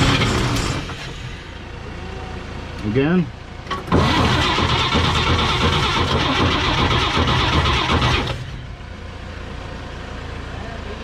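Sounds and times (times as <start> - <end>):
engine cranking on starter: 0.0 - 1.5, 3.6 - 8.7.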